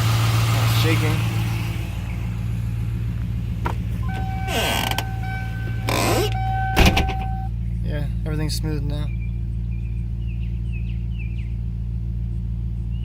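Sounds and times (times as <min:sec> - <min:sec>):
car engine idling: 0:00.0 - 0:13.0
brief creaking rushes: 0:04.0 - 0:07.4
steady high tone: 0:04.0 - 0:07.5.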